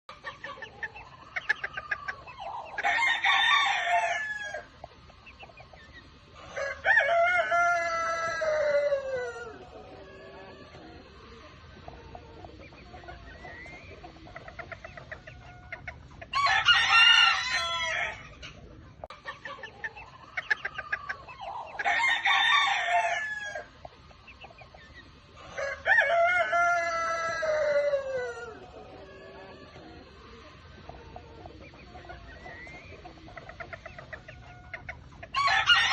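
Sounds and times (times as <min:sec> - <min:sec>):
chickens clucking: 0:00.0 - 0:35.9
rooster crowing: 0:02.8 - 0:04.7, 0:06.5 - 0:10.6, 0:16.3 - 0:18.2, 0:21.8 - 0:23.7, 0:25.5 - 0:29.6, 0:35.3 - 0:35.9.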